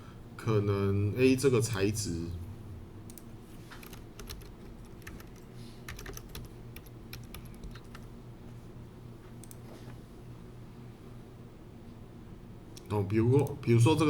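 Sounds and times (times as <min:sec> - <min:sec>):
faint low hum: 0:00.0 - 0:14.0
keyboard and mouse clicking: 0:03.1 - 0:08.1.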